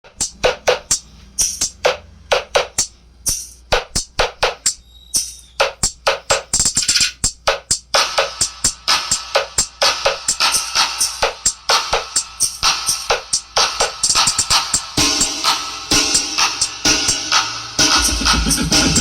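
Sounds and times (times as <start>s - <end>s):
fast drum beat: 0.1s - 4.8s, 5.6s - 19.0s
hissy cymbal strokes: 3.2s - 3.7s.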